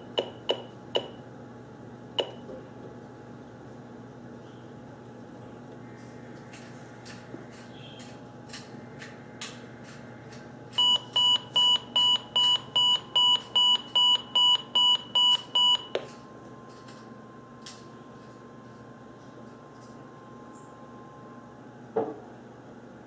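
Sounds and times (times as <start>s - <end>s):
faint steady warning tone: 10.8s - 21.5s.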